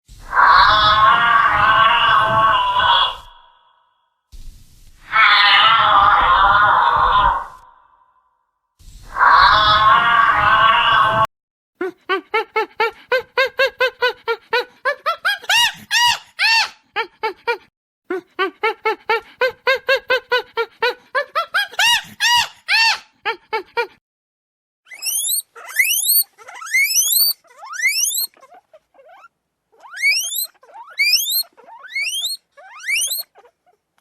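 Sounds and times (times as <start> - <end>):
rising animal squeals: 0.3 - 3.9, 5.0 - 8.0, 9.1 - 11.3, 15.0 - 16.8, 19.4 - 23.1, 24.9 - 33.8
short squeaky animal calls: 24.9 - 33.9.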